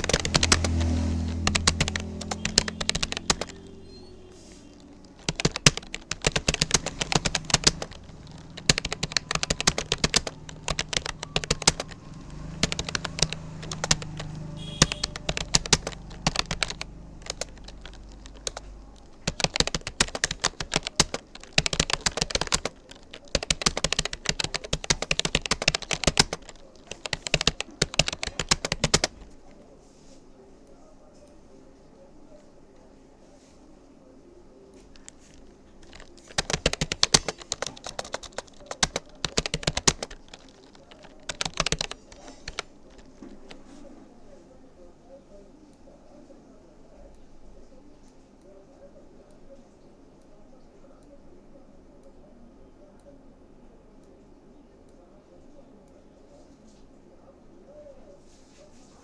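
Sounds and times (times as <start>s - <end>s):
fast typing on keyboard: 0.0s - 29.5s, 35.0s - 43.8s.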